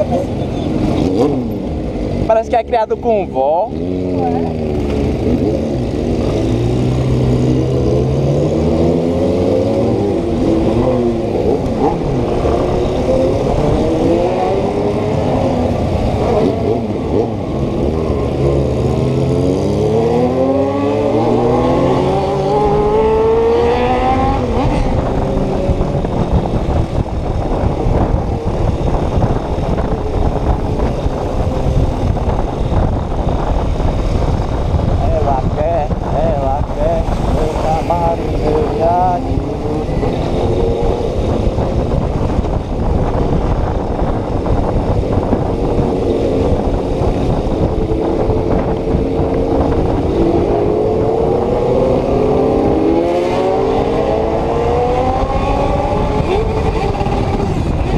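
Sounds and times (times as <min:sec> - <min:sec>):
motorcycle engine revving: 0:00.0 - 0:02.2, 0:03.7 - 0:57.9.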